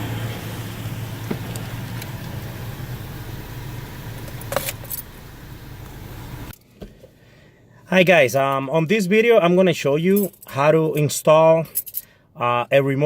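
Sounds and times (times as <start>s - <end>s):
car engine idling: 0.0s - 6.5s.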